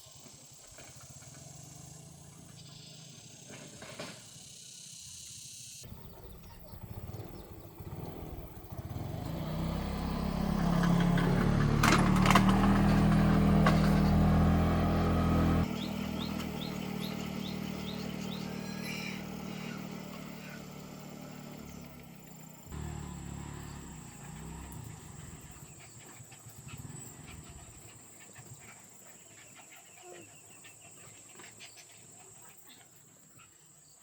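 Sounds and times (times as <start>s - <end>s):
faint engine: 0.0s - 33.5s
engine running: 0.1s - 4.6s, 5.8s - 28.0s.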